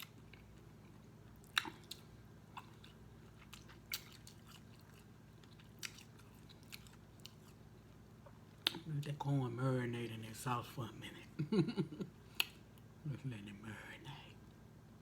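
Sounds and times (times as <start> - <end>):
person chewing food: 0.0 - 8.9, 12.2 - 12.9
faint low hum: 0.0 - 15.0.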